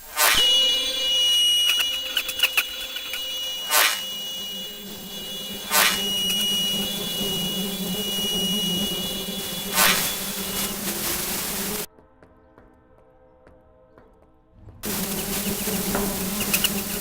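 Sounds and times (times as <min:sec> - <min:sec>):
high-pitched electronic tone: 0:00.2 - 0:11.9.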